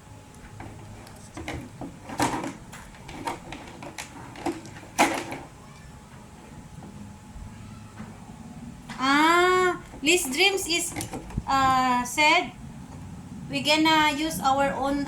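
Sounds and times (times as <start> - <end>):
objects clicking and knocking: 0.6 - 5.5.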